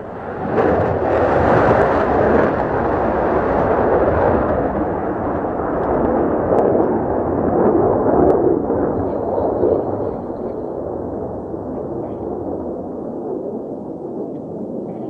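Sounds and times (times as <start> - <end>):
jet engine roaring: 0.0 - 15.0.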